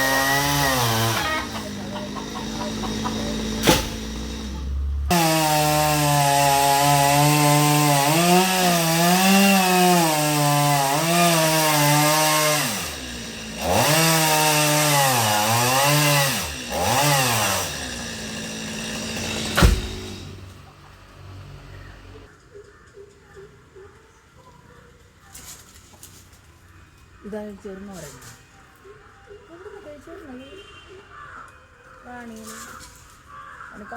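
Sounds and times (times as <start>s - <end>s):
chainsaw cutting wood: 0.0s - 20.7s.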